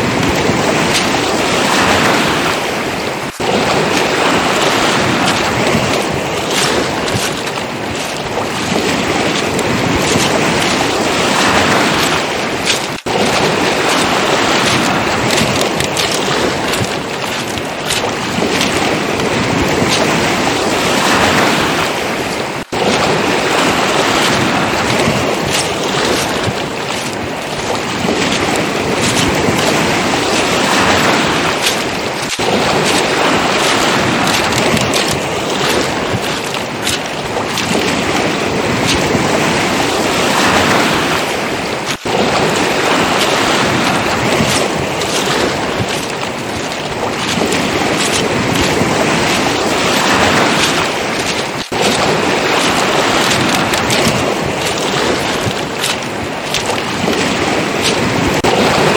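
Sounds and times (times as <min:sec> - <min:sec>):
waves washing over pebbles: 0:00.0 - 0:58.9
wind buffeting microphone: 0:00.0 - 0:58.9
pebbles clicking and crunching: 0:11.6 - 0:18.9.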